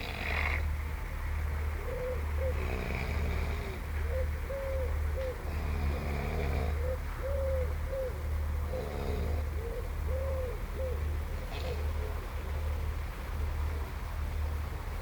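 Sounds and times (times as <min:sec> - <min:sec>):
steady low hum: 0:00.0 - 0:15.0
dove cooing: 0:01.8 - 0:12.5.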